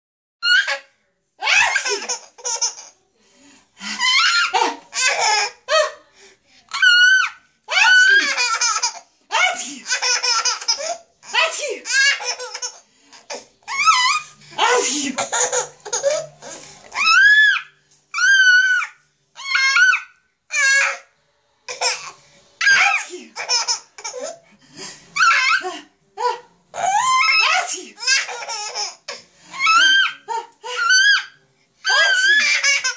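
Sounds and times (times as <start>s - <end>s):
baby squealing: 0.4s - 0.8s, 4.0s - 5.4s, 6.7s - 12.7s, 13.3s - 14.4s, 16.9s - 21.0s, 25.2s - 25.6s, 26.8s - 29.0s, 29.6s - 32.9s
baby laughing: 1.4s - 3.0s, 4.0s - 5.6s, 7.7s - 17.2s, 21.7s - 24.4s, 26.8s - 31.3s, 31.9s - 32.9s.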